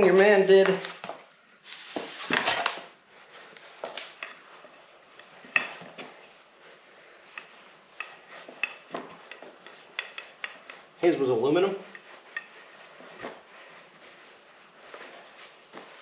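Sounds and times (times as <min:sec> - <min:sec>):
rustling: 0:00.0 - 0:16.0
small hard items clicking and tapping: 0:07.3 - 0:11.0.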